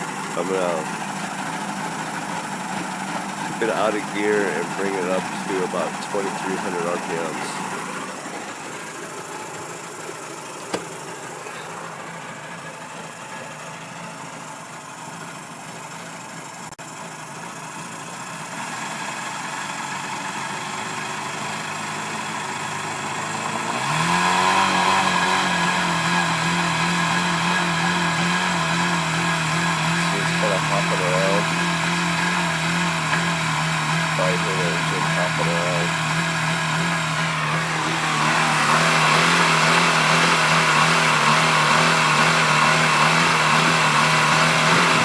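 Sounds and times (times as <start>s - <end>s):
two-stroke outboard engine running: 0.0s - 45.0s.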